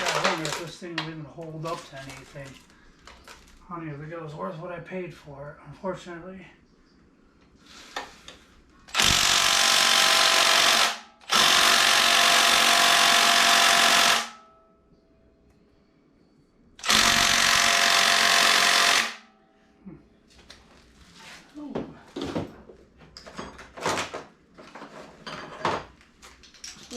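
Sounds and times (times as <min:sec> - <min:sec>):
impact wrench hammering: 0:16.8 - 0:19.2.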